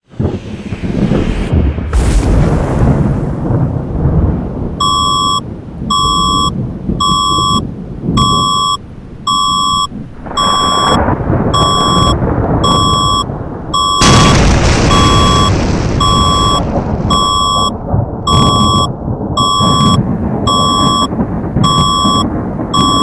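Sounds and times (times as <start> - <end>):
explosion sound effects: 0.0 - 6.7, 9.9 - 23.0
thunder rumble: 0.0 - 23.0
emergency alarm beeping: 4.8 - 23.0.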